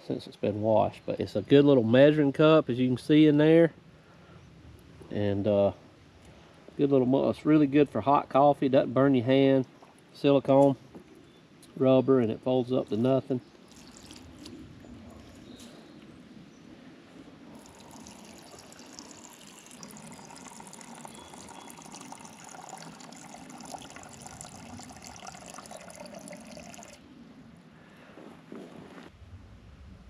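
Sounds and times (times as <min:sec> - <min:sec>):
water pouring into cup: 0:13.7 - 0:14.5, 0:17.6 - 0:27.0.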